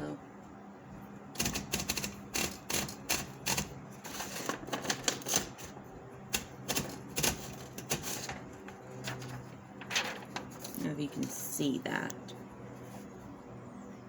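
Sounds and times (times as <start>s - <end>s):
manual typewriter keys clacking: 1.4s - 10.7s.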